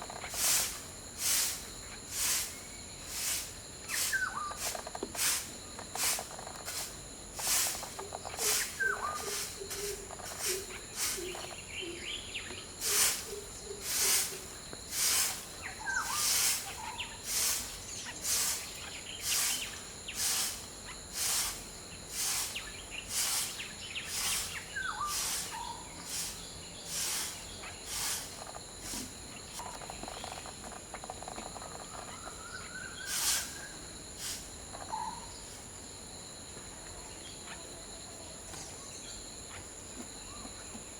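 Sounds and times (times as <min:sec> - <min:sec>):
high-pitched insect drone: 0:03.2 - 0:12.0.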